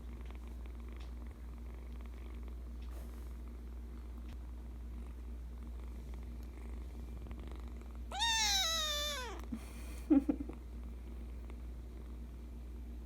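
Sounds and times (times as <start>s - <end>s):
kitten purring: 0.0s - 12.8s
kitten meowing: 8.1s - 9.4s.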